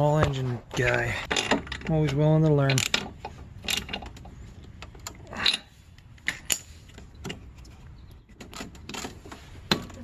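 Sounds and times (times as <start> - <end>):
metal tools clicking and clinking: 0.8 - 7.4.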